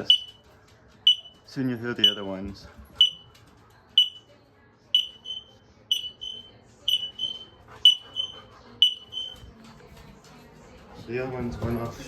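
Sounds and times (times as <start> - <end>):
smoke alarm beeping: 0.0 - 0.4, 1.0 - 2.4, 3.0 - 3.4, 4.0 - 4.3, 4.9 - 9.5
fainter linked alarm beeps: 0.0 - 4.3, 4.9 - 9.5.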